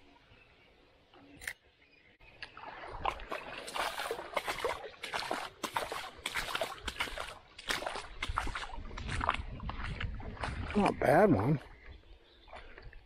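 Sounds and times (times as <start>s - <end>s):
fish splashing water: 2.5s - 11.0s.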